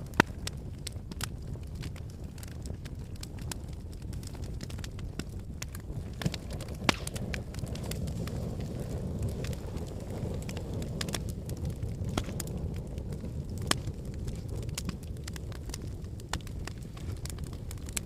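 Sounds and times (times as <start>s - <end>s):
wood fire crackling: 0.0s - 18.0s.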